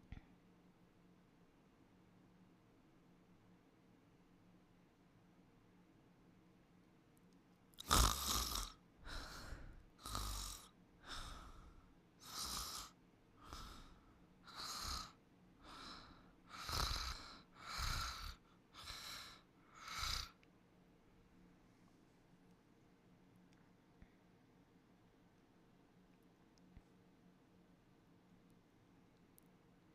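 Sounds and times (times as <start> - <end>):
person snoring: 7.8 - 20.4.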